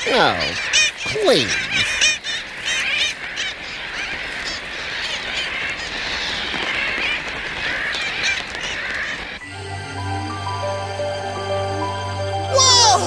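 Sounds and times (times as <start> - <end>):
tern colony calling: 0.0 - 13.0.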